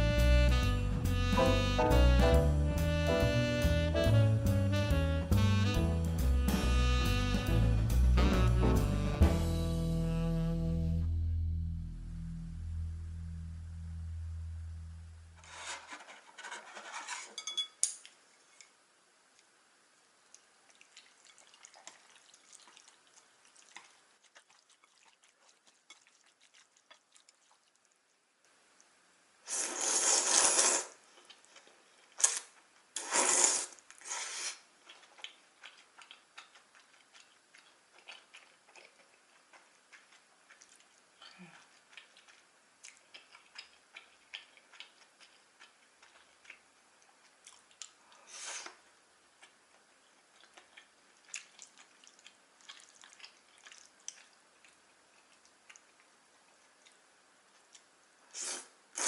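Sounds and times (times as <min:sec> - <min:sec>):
quiet close-up chewing: 0:20.2 - 0:29.0, 0:31.0 - 0:33.0, 0:33.7 - 0:59.0
noodles slurped loudly: 0:20.7 - 0:27.9, 0:29.5 - 0:45.4, 0:50.2 - 0:55.9, 0:58.3 - 0:59.0
wet mouth clicks: 0:32.1 - 0:48.8.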